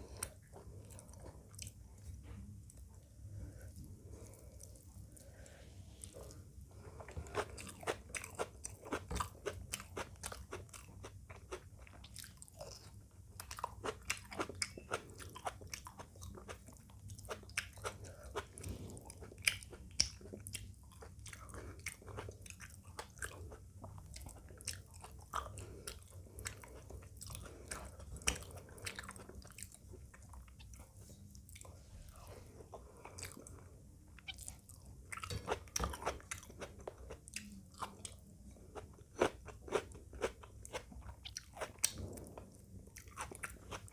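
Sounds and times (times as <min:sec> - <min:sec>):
person chewing and crunching food: 0:00.0 - 0:43.9.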